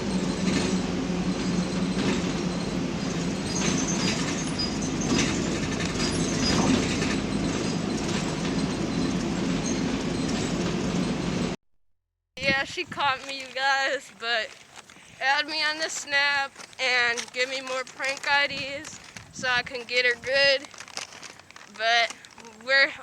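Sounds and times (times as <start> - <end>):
rattles: 0.0 - 11.5, 12.4 - 23.0
bus engine drone: 0.0 - 11.6
road rumble: 0.0 - 11.6, 12.4 - 23.0.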